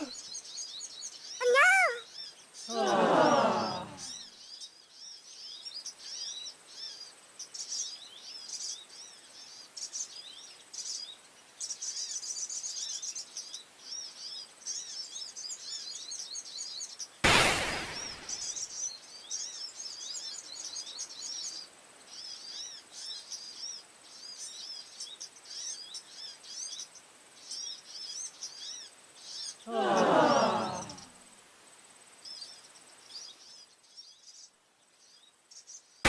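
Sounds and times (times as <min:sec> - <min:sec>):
songbirds chirping: 0:00.0 - 0:36.0
loud thump: 0:17.2 - 0:18.5.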